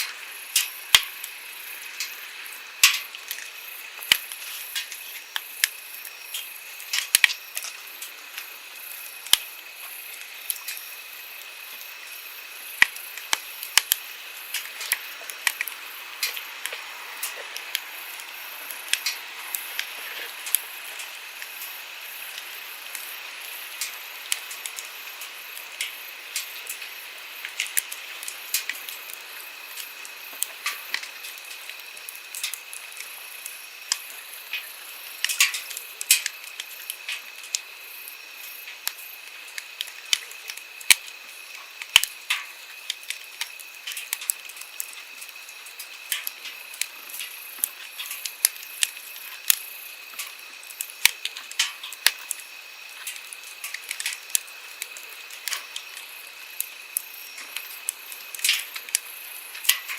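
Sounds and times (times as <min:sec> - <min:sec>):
campfire crackling and popping: 0:00.0 - 0:59.9.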